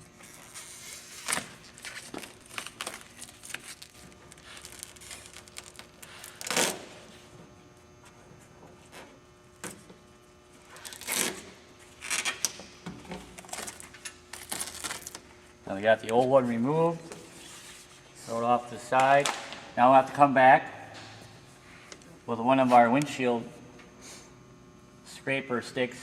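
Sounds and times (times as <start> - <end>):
rubber weatherstrip ripping: 0.2 - 7.0, 10.8 - 12.4.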